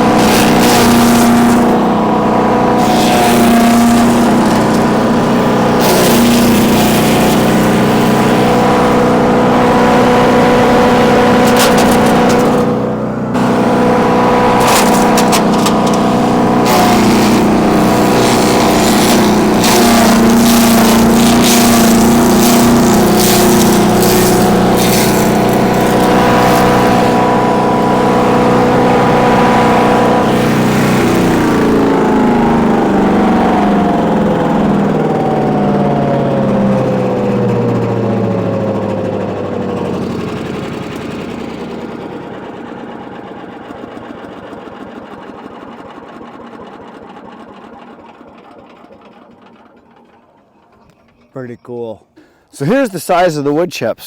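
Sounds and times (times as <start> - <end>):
wood chipper engine running: 0.0 - 50.7, 52.2 - 53.7
wood cracking and clattering: 5.8 - 7.9, 11.4 - 12.7, 14.6 - 27.3.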